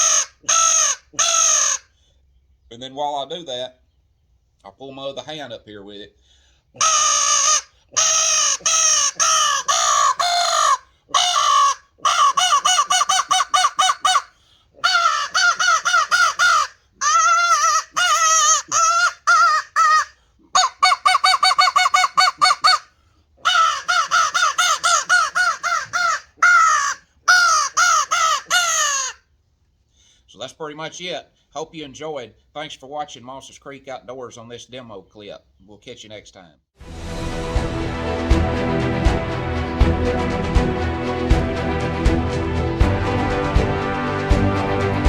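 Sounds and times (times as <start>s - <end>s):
crow call caws: 6.8s - 22.8s, 23.5s - 29.2s.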